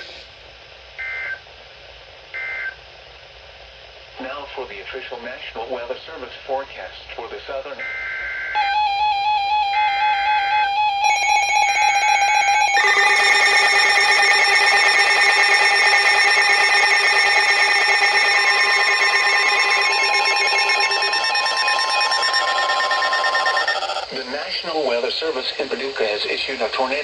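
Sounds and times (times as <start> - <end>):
alternating electronic data tones: 8.6 - 24.1
harsh multi-tone alert signal: 8.6 - 24.1
higher steady tone: 8.6 - 24.1.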